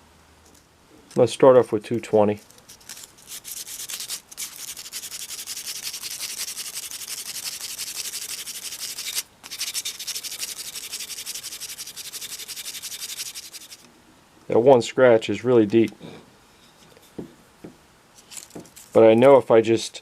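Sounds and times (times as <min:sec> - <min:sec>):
sandpaper rubbing on plastic: 0:02.9 - 0:13.8.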